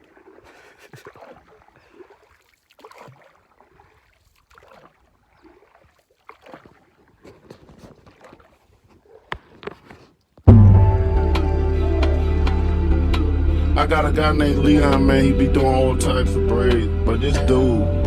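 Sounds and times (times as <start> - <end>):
water splashing against canoe: 0.0 - 10.5
sharp knock: 10.5 - 11.0.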